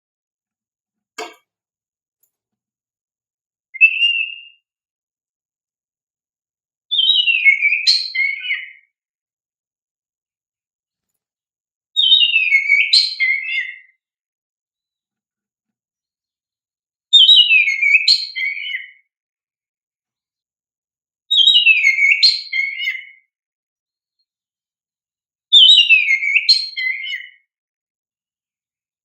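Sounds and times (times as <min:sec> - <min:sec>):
bird singing whistled phrase: 0:03.8 - 0:04.6, 0:06.9 - 0:08.9, 0:12.0 - 0:13.9, 0:17.1 - 0:19.0, 0:21.3 - 0:23.2, 0:25.5 - 0:27.4.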